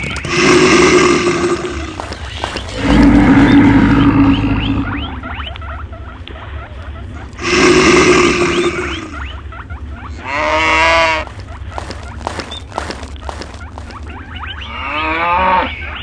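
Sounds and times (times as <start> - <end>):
loud animal roar: 0.3 - 5.3, 7.4 - 9.2
bending animal call: 0.3 - 6.0, 7.0 - 15.8
rising chirps: 2.6 - 5.5, 7.4 - 9.4.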